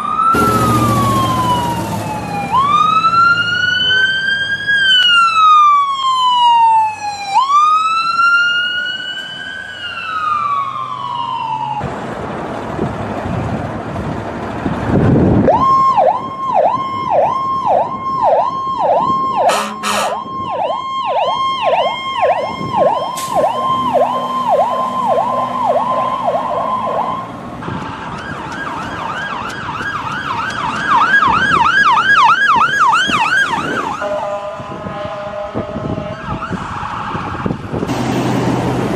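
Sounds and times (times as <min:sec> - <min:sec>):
siren yelp: 0:00.0 - 0:11.8, 0:15.4 - 0:37.9
ambulance siren wailing: 0:00.0 - 0:11.9, 0:15.2 - 0:37.9
rushing noise: 0:00.4 - 0:03.6, 0:37.6 - 0:38.9.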